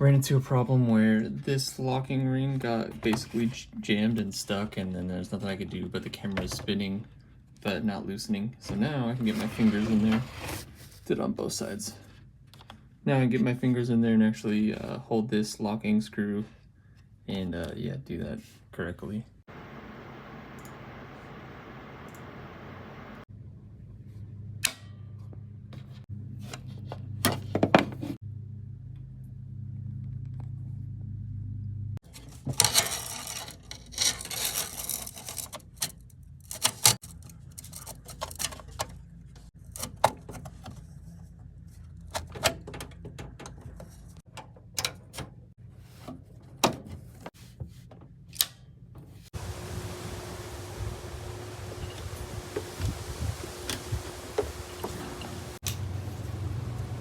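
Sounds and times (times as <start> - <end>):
rustling hiss: 19.5 - 23.2, 49.4 - 57.0
steady low hum: 19.5 - 24.6, 49.4 - 57.0.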